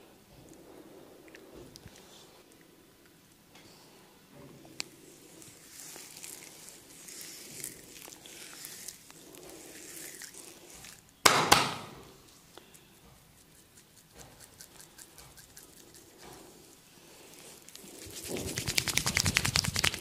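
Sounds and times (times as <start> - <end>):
hands rubbing: 4.8 - 11.2, 12.2 - 20.0.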